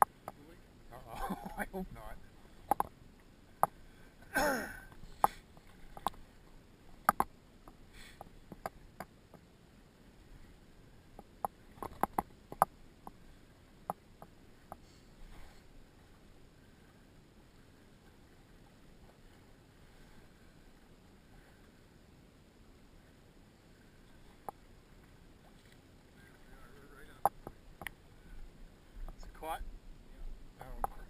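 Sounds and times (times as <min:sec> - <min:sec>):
sharp clicks and knocks: 0:02.7 - 0:02.9, 0:07.0 - 0:09.4, 0:11.2 - 0:13.2.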